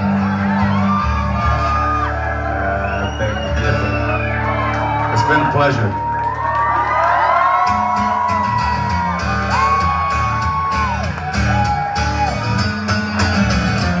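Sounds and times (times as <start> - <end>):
voices whooping: 0.0 - 12.7
acoustic guitar strumming: 7.6 - 14.0.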